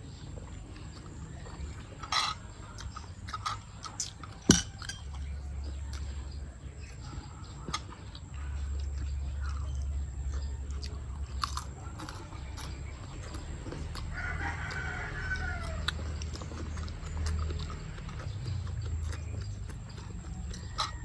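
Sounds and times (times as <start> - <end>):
close-up chewing and biting: 0.0 - 21.0
steady low hum: 0.0 - 21.0
rooster crowing: 14.0 - 16.4, 20.5 - 21.0.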